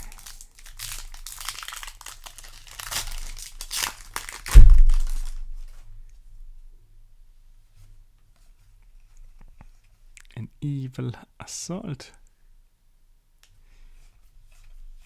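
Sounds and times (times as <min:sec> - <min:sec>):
foil pack tearing and crinkling: 0:00.0 - 0:05.8
loud low thump: 0:04.5 - 0:05.8.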